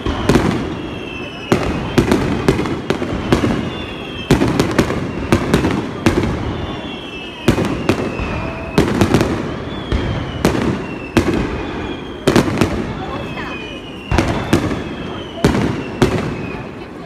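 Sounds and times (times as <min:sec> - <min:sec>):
fireworks bursting: 0:00.0 - 0:17.0
fireworks whistling: 0:00.0 - 0:17.0.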